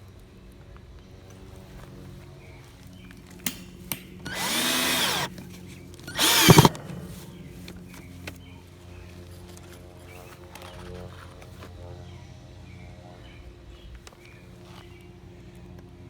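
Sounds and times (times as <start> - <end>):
sharp clicks: 4.3 - 5.3, 6.1 - 6.7
power drill running: 4.3 - 5.4, 6.1 - 6.7.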